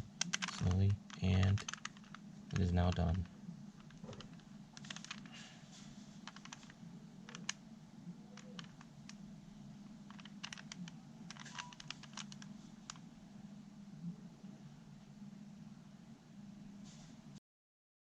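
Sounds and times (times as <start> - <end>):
plastic puzzle cube clicking: 0.2 - 3.2, 3.8 - 5.3, 6.2 - 6.7, 7.3 - 7.6, 8.4 - 9.2, 10.1 - 13.0.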